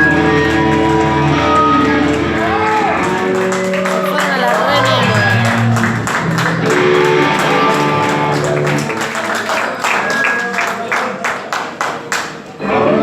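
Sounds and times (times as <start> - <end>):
electric guitar sustained chords: 0.0 - 9.0
live rock band playing: 0.0 - 9.1.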